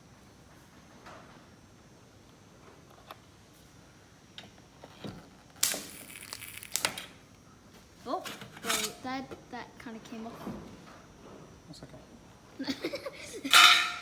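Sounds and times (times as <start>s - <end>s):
stud welder burst: 5.6s - 7.1s, 13.5s - 14.0s.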